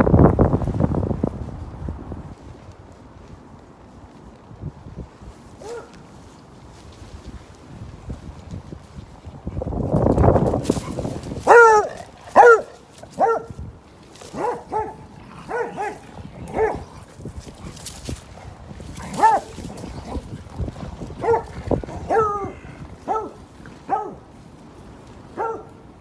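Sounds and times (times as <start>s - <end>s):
dog barking: 5.6s - 6.0s, 10.8s - 13.6s, 14.3s - 17.0s, 18.4s - 20.3s, 21.2s - 24.2s, 25.4s - 25.8s.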